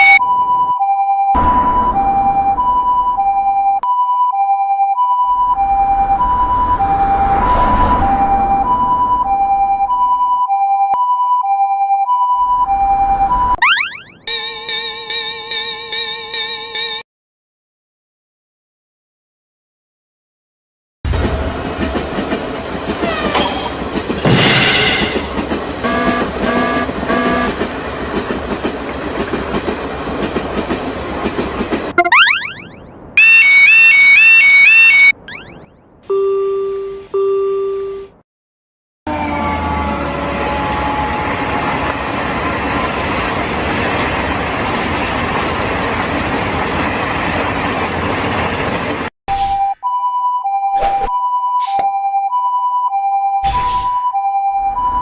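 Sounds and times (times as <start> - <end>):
two-tone level-crossing alarm: 0.0 - 17.0, 24.2 - 27.6, 32.0 - 38.1, 49.5 - 55.0
train passing rumble: 5.3 - 10.0, 21.1 - 32.0, 39.1 - 49.1
wheels clattering on rails: 21.1 - 32.0
train horn blasts: 25.8 - 27.7, 39.1 - 42.3.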